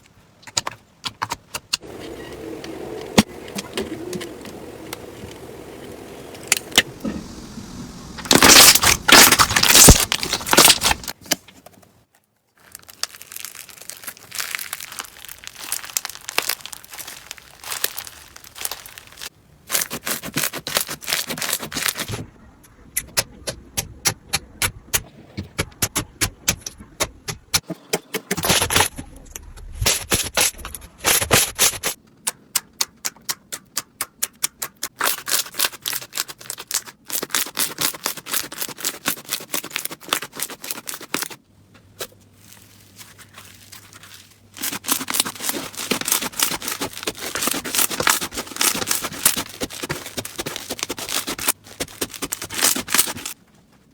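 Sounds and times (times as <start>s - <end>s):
slime crackling and popping: 8.1s - 11.2s, 12.6s - 22.1s, 42.6s - 53.4s.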